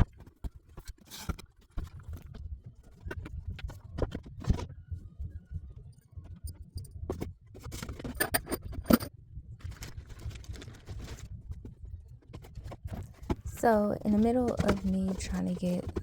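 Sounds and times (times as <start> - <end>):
objects clattering and knocking: 7.1 - 11.6, 12.3 - 16.0.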